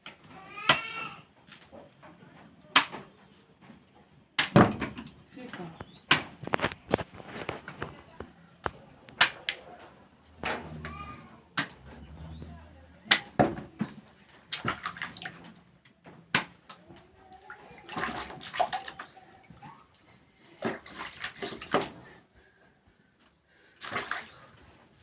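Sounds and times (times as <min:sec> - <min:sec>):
water splashing and sloshing: 0:10.2 - 0:22.3, 0:23.8 - 0:25.0.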